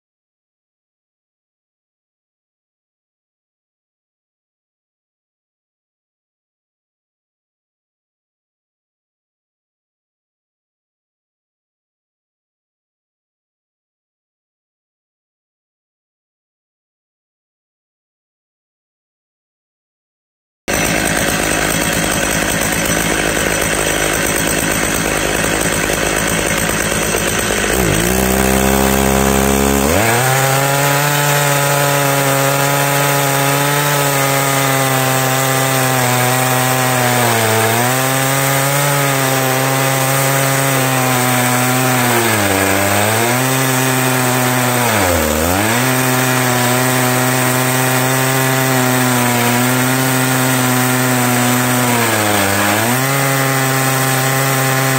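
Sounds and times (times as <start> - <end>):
chainsaw cutting log: 20.7 - 54.9.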